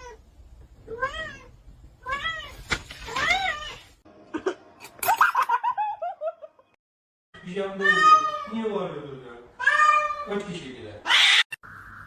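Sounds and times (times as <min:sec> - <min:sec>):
cat meowing: 0:07.8 - 0:08.6, 0:09.6 - 0:10.4.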